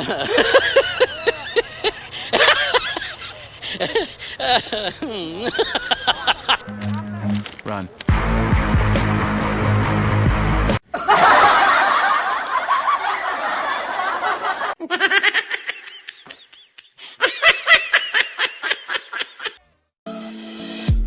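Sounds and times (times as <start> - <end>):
person laughing in short pulses: 0.0 - 6.9
crowd laughing: 0.0 - 8.3, 10.8 - 19.6.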